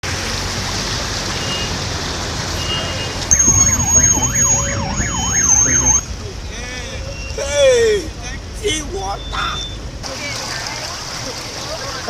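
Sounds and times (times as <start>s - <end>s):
electronic siren wailing: 3.3s - 6.2s
steady rushing noise: 3.3s - 6.8s.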